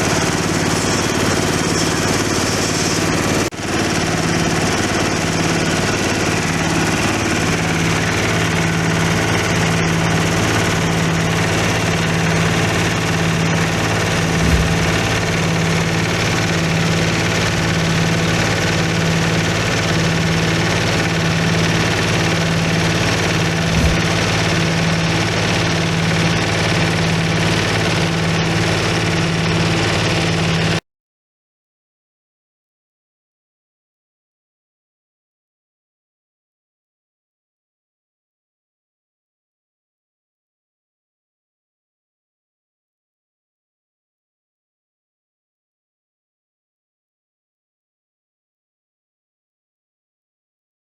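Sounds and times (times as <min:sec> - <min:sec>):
crushing machine humming: 0:00.0 - 0:30.8
low thumps: 0:13.5 - 0:18.6, 0:23.4 - 0:24.2.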